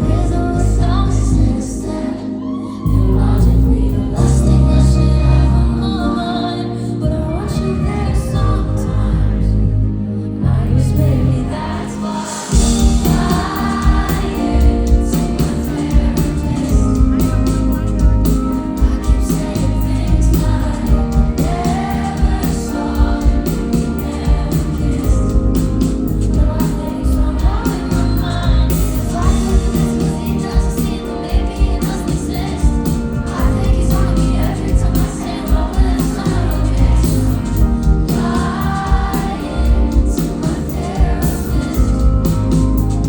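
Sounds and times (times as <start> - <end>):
woman singing: 0.0 - 43.0
live band with heavy bass: 10.5 - 43.0.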